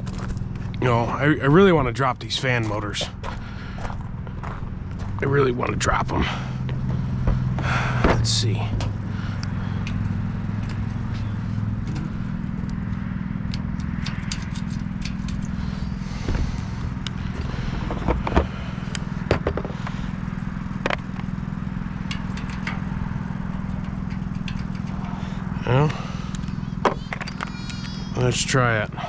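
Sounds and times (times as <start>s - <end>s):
steady low hum: 0.0s - 29.0s
metallic clicks and scrapes: 13.4s - 16.0s, 22.0s - 25.5s.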